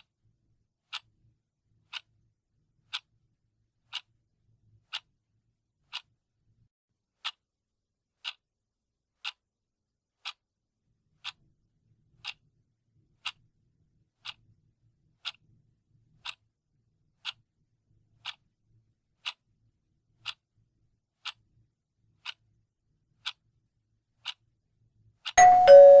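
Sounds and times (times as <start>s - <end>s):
clock ticking: 0.9s - 1.2s, 1.9s - 2.2s, 2.8s - 3.1s, 3.8s - 4.1s, 4.8s - 5.1s, 5.8s - 6.2s, 7.2s - 7.4s, 8.2s - 8.4s, 9.2s - 9.4s, 11.2s - 11.4s, 12.2s - 12.5s, 13.2s - 13.5s, 14.2s - 14.5s, 15.2s - 15.5s, 16.2s - 16.5s, 17.2s - 17.4s, 18.2s - 18.5s, 19.2s - 19.4s, 20.2s - 20.4s, 21.2s - 21.5s, 22.2s - 22.4s, 23.2s - 23.4s, 24.2s - 24.4s, 25.2s - 26.0s.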